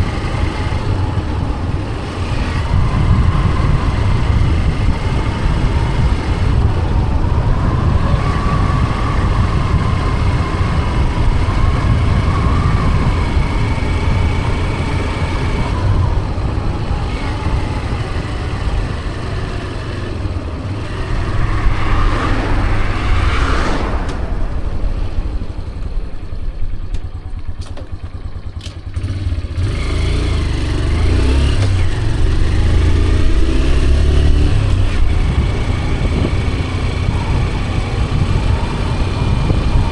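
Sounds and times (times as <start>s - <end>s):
vehicle engine rumble: 0.0s - 39.9s
wavering whine: 20.0s - 28.2s.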